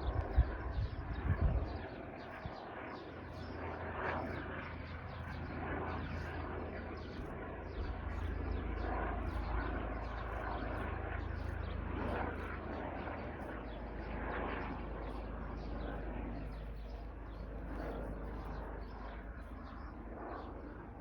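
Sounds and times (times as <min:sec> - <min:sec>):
wind gusts on microphone: 0:00.0 - 0:02.6
helicopter rotor and engine rumble: 0:00.0 - 0:21.0.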